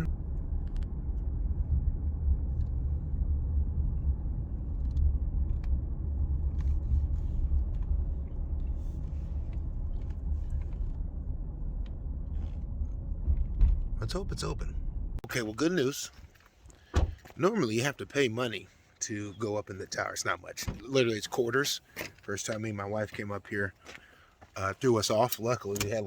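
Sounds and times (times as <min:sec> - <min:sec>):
wind buffeting microphone: 0:00.0 - 0:15.2.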